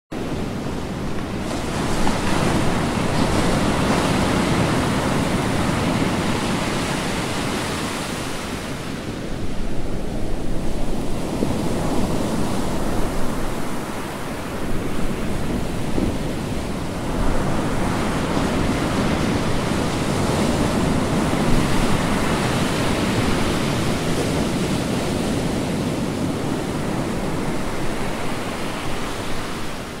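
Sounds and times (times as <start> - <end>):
ocean waves breaking: 0.2 - 30.0.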